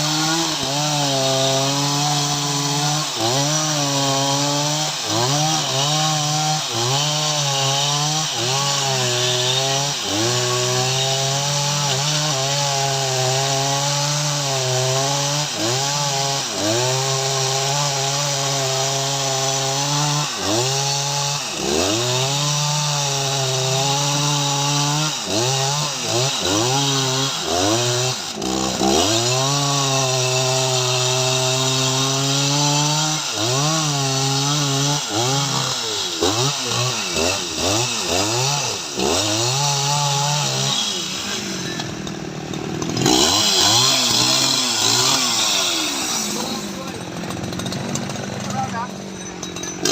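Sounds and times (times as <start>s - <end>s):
chainsaw cutting wood: 0.0s - 49.9s.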